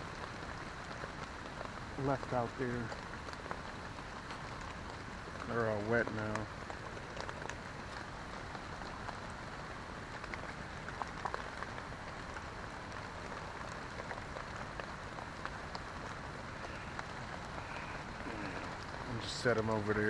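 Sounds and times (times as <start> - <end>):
heavy rain: 0.0 - 20.0
drops ticking close by: 10.3 - 20.0.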